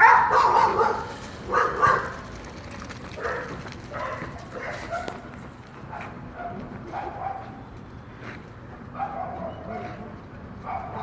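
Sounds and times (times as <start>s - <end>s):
dog barking and yipping: 0.0s - 2.2s, 3.2s - 5.2s, 5.9s - 7.6s, 9.0s - 10.0s, 10.6s - 11.0s.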